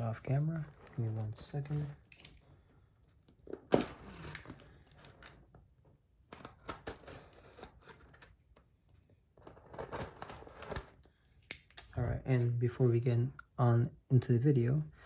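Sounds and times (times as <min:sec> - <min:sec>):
tape and cardboard rustling: 0:00.0 - 0:02.5, 0:03.1 - 0:11.9.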